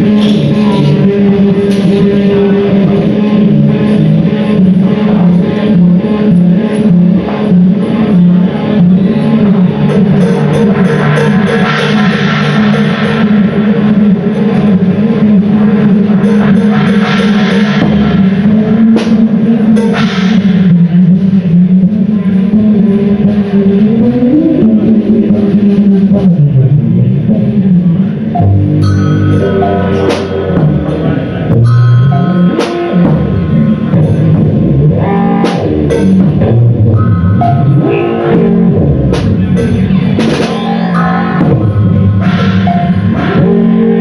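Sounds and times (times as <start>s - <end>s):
live band playing loud music: 0.0s - 26.9s, 28.3s - 44.0s
sharp drum hits: 9.9s - 14.9s, 15.8s - 21.1s.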